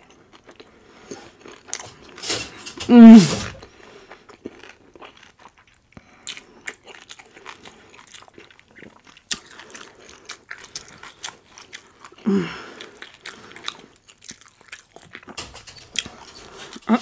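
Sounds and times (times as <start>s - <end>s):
wet chewing and crunchy bites: 3.6s - 15.4s.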